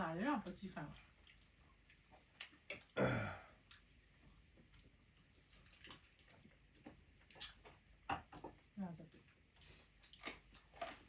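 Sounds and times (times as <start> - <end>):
person sighing: 3.0 - 3.5.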